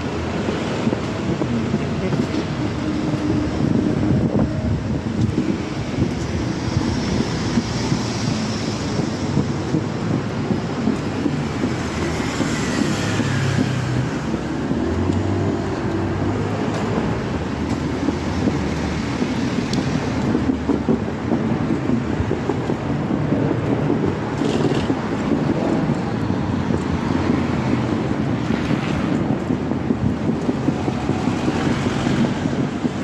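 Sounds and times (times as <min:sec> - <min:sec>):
street traffic: 0:00.0 - 0:33.0
wind rumbling on microphone: 0:00.0 - 0:33.0.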